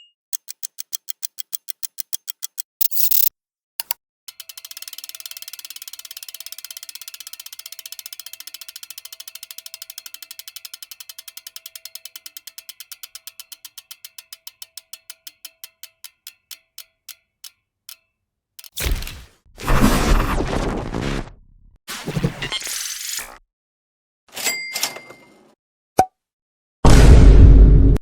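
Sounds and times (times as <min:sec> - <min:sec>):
rapid mechanical ratchet clicking: 0:00.3 - 0:18.8.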